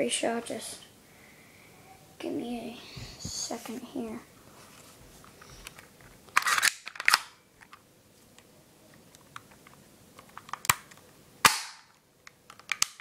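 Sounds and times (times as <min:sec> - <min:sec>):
airsoft pistol shots: 0:11.4 - 0:11.9.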